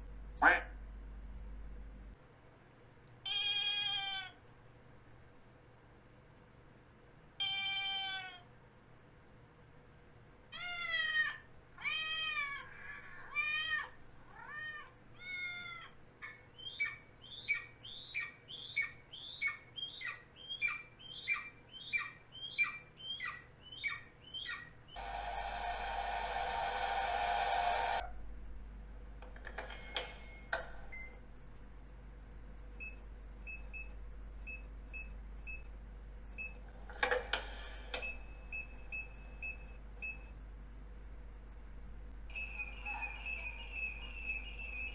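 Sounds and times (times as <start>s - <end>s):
cat meowing: 3.2s - 4.4s, 7.4s - 8.5s, 10.5s - 16.4s
loud steady buzzing: 25.0s - 28.1s
short high falling cries: 42.3s - 44.9s
squeaky dog toy: 42.3s - 44.9s.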